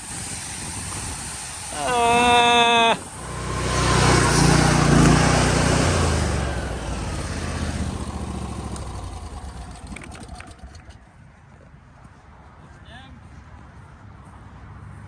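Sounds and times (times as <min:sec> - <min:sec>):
vehicle engine passing by: 0:02.6 - 0:11.1.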